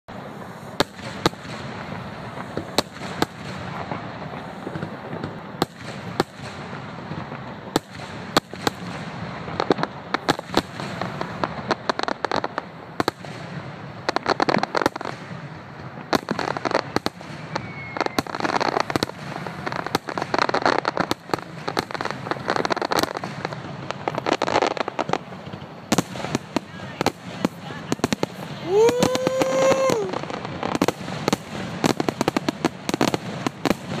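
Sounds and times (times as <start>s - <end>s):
dense firework crackling: 0.1s - 34.0s
firework shells bursting: 16.0s - 34.0s.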